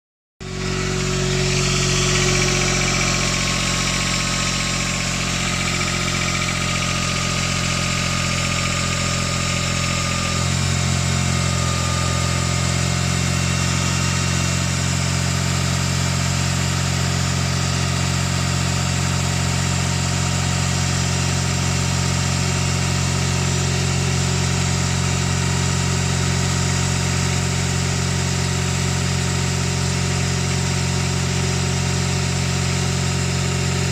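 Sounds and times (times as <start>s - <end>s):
car engine idling: 0.4s - 15.5s
engine knock: 0.4s - 33.9s.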